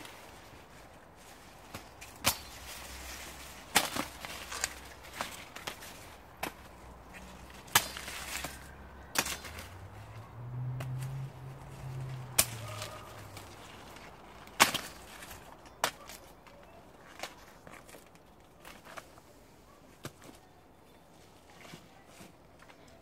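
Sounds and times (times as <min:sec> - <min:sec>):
dried corn ears snapping: 0:01.5 - 0:10.0, 0:10.7 - 0:16.4.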